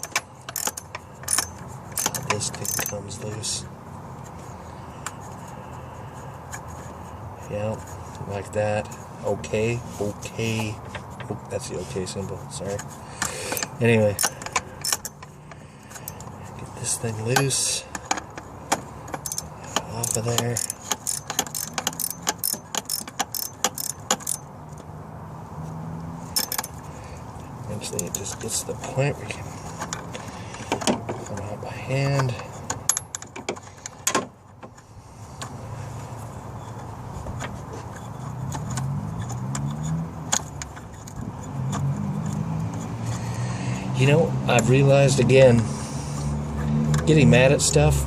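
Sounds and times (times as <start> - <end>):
ratchet wrench clicking: 0.0 - 3.0, 12.8 - 16.3, 19.1 - 24.5, 26.3 - 26.8, 37.9 - 43.4
hand tools clinking on metal: 0.0 - 3.5, 12.7 - 15.3, 19.1 - 24.5, 26.3 - 26.8.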